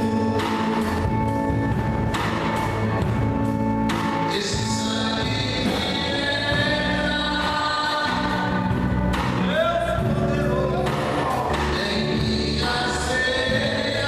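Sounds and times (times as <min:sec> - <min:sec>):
choir singing gospel song: 0:04.1 - 0:14.0.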